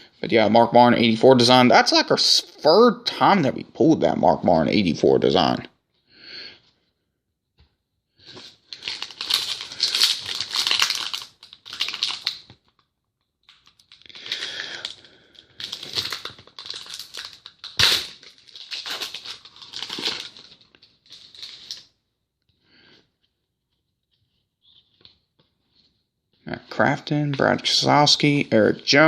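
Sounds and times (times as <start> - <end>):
plastic wrapper crinkling and tearing: 8.3 - 22.0.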